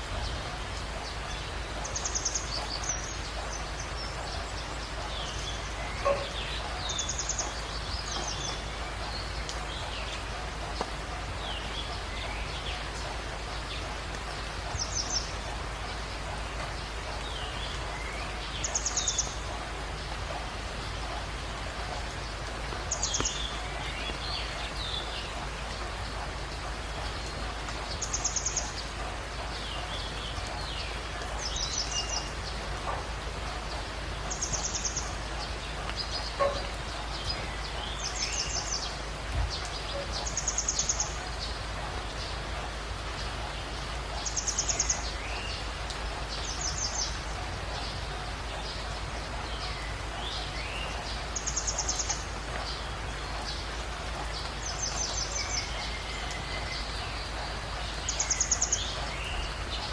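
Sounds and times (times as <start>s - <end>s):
steady background hiss: 0.0s - 59.9s.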